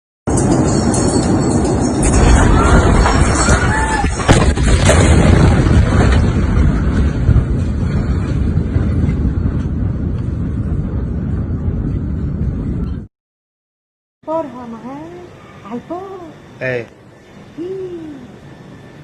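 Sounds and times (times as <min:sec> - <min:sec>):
large explosion rumbling roar: 0:01.9 - 0:13.1.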